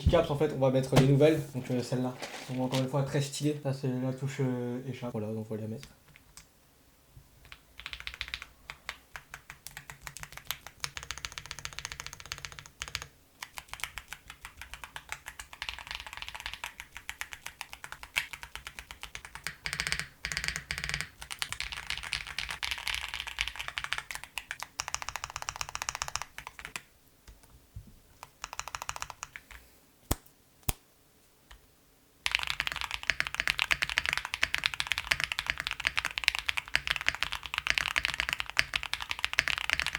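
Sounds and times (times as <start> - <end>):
keycaps clicking onto keyboard: 7.4 - 26.8, 28.2 - 29.6, 32.3 - 39.9.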